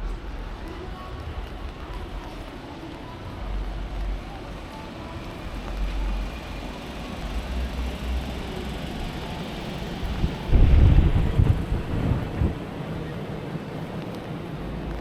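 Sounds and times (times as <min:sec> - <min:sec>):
low uneven rumble: 0:00.0 - 0:15.0
rain hiss: 0:10.0 - 0:13.0
wind buffeting microphone: 0:10.0 - 0:13.8.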